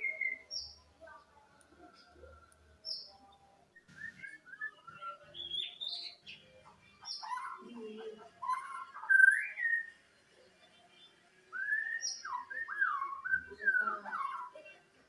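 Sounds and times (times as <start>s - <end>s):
songbird whistled call: 0.0s - 0.8s, 3.8s - 6.2s, 8.4s - 10.0s, 11.5s - 14.5s.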